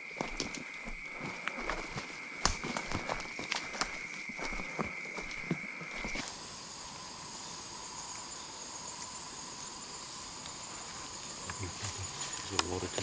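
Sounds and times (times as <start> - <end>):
insects chorus: 0.0 - 13.0
light crackles and ticks: 6.2 - 13.0.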